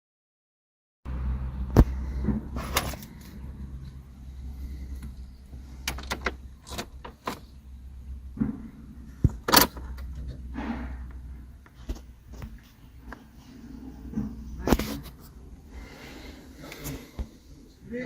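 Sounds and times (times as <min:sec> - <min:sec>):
low steady hum: 0:01.1 - 0:18.0
sharp clicks and knocks: 0:05.8 - 0:07.5, 0:08.4 - 0:13.2.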